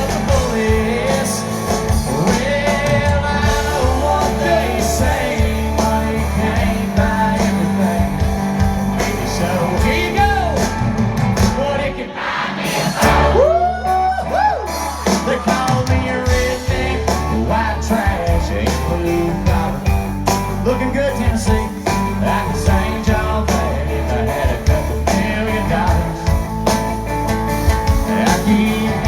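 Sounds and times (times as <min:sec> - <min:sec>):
person singing: 0:00.0 - 0:10.8, 0:27.9 - 0:29.0
live country rock band: 0:00.0 - 0:29.0.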